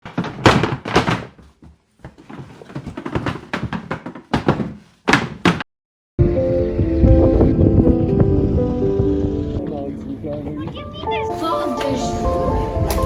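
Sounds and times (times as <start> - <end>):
rustling: 0.0 - 5.4
music with held notes: 6.2 - 13.0.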